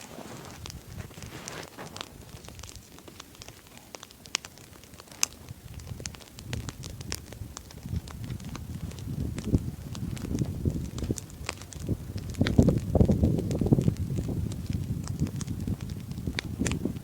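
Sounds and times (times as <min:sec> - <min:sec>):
log fire crackling and popping: 0:00.0 - 0:17.0.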